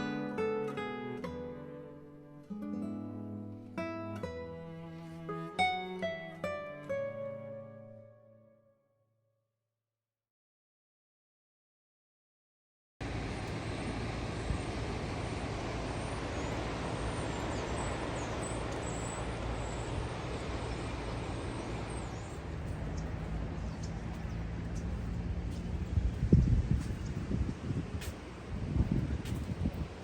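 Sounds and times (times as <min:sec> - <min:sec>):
road traffic: 0:03.3 - 0:07.8, 0:13.0 - 0:30.0.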